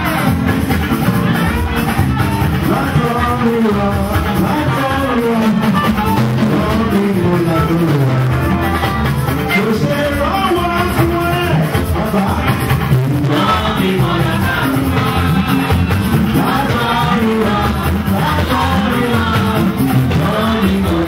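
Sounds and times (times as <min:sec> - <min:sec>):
band with bass and drums: 0:00.0 - 0:21.0
singing voices: 0:00.0 - 0:21.0.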